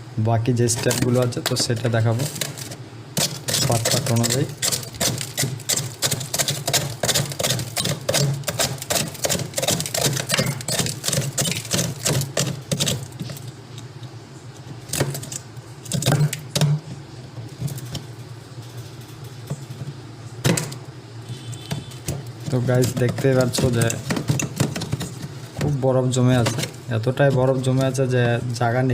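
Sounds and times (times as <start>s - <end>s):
steady low hum: 0.0s - 28.9s
tool chipping ice: 3.2s - 13.1s.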